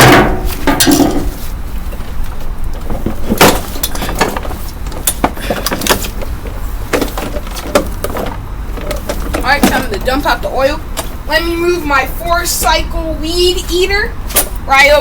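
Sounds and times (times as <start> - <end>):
knocks and clatter of lawn mower: 0.0 - 11.2.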